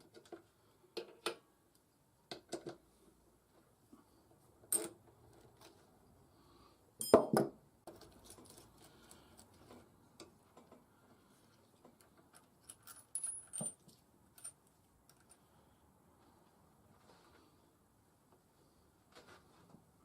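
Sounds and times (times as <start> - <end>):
metal objects clinking: 12.4 - 15.3.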